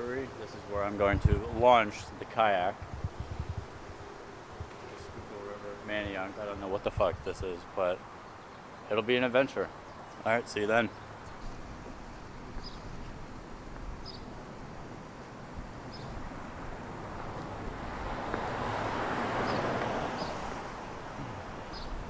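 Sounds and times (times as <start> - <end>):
outdoor background noise: 0.0 - 22.0
vehicle passing by: 15.9 - 21.8.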